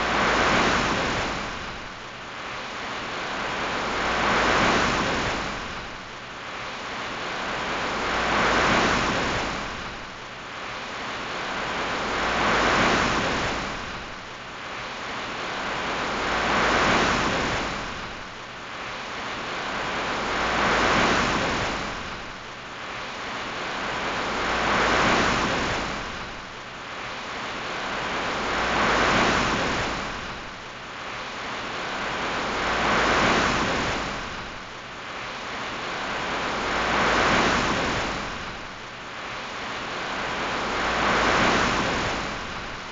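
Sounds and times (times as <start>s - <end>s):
sea waves washing in: 0.0s - 42.9s.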